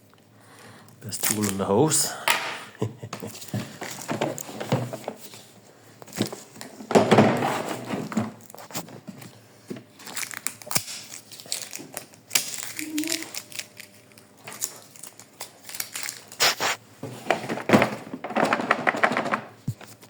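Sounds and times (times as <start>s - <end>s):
plastic packaging crinkling: 1.1s - 2.1s, 9.9s - 16.8s
loud rip: 16.3s - 16.8s.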